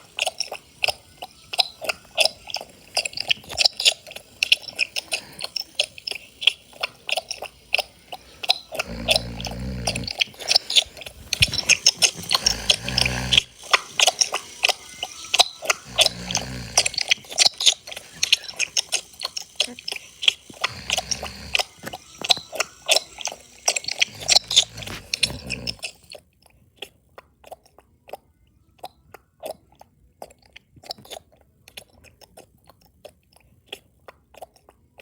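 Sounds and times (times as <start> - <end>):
smacking clicks: 0.0 - 26.0
wet chewing: 0.0 - 35.0
short low snores: 8.0 - 26.0.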